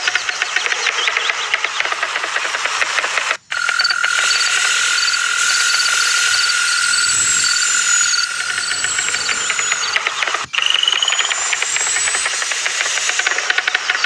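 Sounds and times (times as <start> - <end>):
steady high animal trill: 3.4 - 14.0
faint falling whistle: 5.0 - 13.0.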